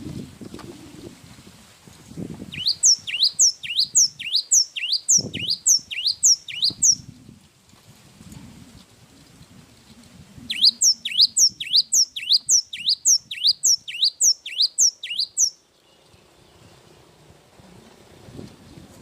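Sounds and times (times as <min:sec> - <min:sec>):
songbird whistling sharp notes: 0:02.5 - 0:07.1, 0:10.5 - 0:15.6.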